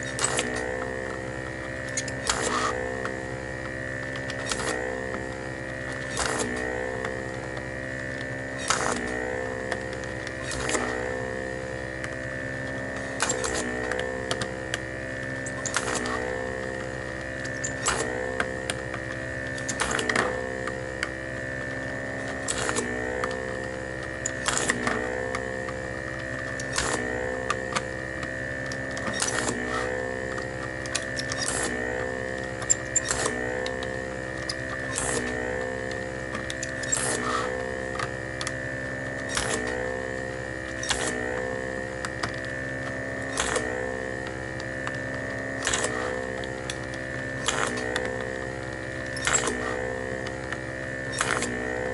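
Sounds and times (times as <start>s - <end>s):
sharp desoldering pump click: 0.0s - 9.1s, 12.0s - 40.0s, 40.6s - 48.4s, 49.0s - 51.6s
pump motor humming: 0.0s - 51.9s.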